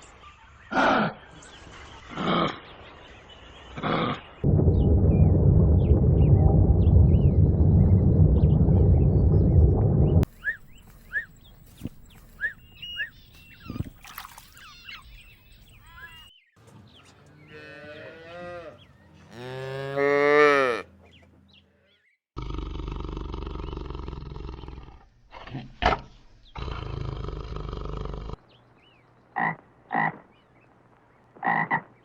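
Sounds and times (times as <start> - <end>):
steady rushing noise: 4.4 - 10.3.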